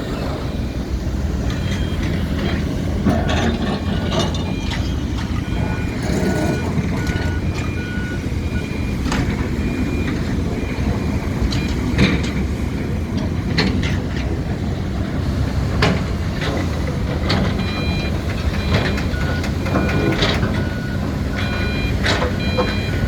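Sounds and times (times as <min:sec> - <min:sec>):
excavator diesel engine running: 0:00.0 - 0:23.0
warning alarm beeping: 0:00.4 - 0:13.1, 0:17.4 - 0:23.0
concrete and steel clanking: 0:01.4 - 0:14.7.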